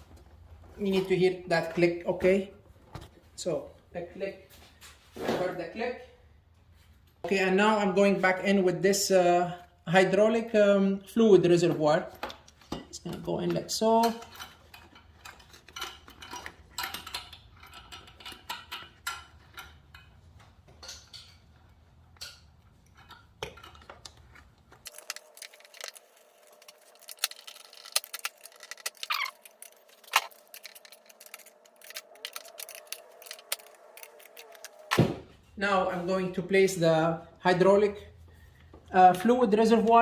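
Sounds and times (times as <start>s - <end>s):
plastic and metal parts clicking: 23.0s - 34.9s.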